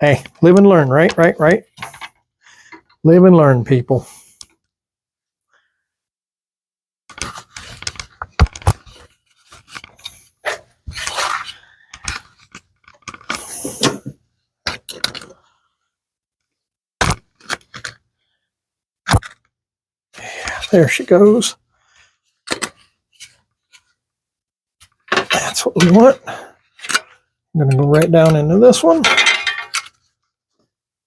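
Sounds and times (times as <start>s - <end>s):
small parts clattering: 24.9s - 26.1s, 27.8s - 30.1s.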